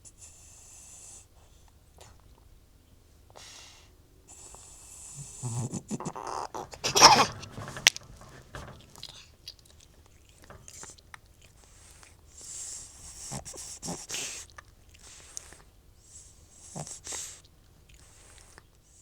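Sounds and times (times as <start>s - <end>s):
cat retching: 5.2s - 11.0s.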